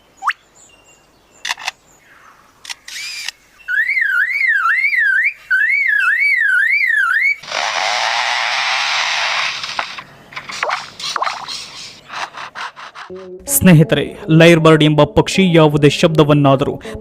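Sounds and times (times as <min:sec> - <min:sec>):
bird clicks: 0:01.4 - 0:01.8
bird warbling alarm-like tone: 0:03.6 - 0:07.4
bird loud rasping noise: 0:07.4 - 0:13.2.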